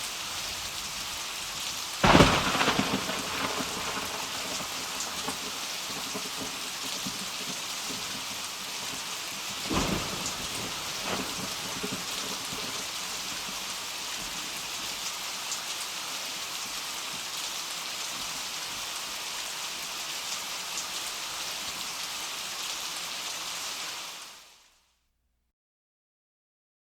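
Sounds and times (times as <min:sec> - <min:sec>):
heavy rain hissing: 0:00.0 - 0:24.8
thunder crack: 0:02.0 - 0:13.4
thunder rumble: 0:02.0 - 0:13.8.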